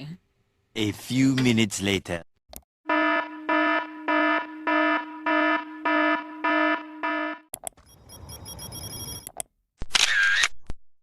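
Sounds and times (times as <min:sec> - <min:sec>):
electronic alarm buzz: 0:02.8 - 0:09.3.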